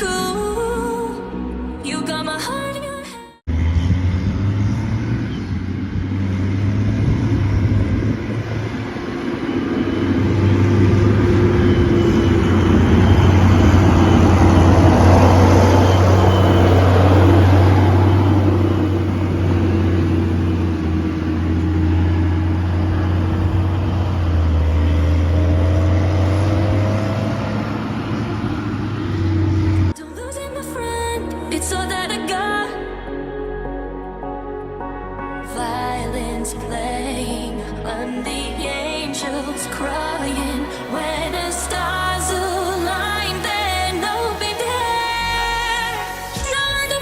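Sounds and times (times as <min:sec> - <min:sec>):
diesel farm machinery running: 0:03.5 - 0:30.0.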